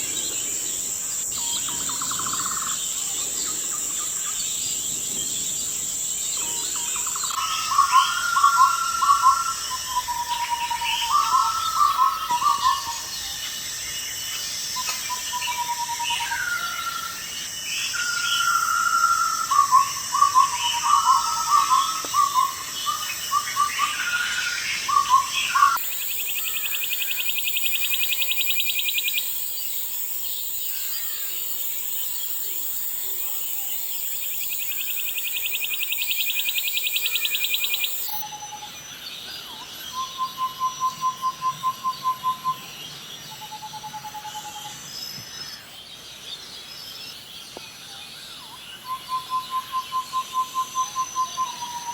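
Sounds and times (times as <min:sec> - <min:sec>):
birds whistling and chirping: 0:17.9 - 0:45.8, 0:48.4 - 0:51.9
steady high hiss: 0:25.4 - 0:38.2.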